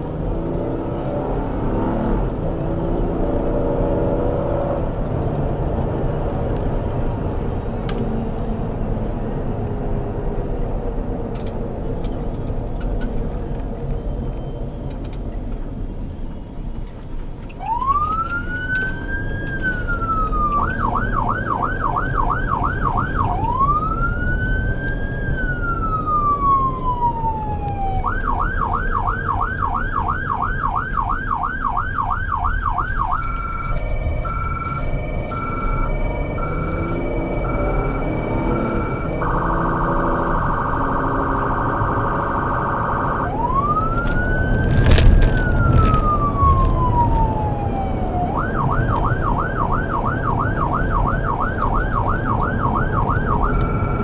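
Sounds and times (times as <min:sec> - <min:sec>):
vehicle engine and road rumble: 0:00.0 - 0:54.0
emergency siren wailing and yelping: 0:17.5 - 0:54.0.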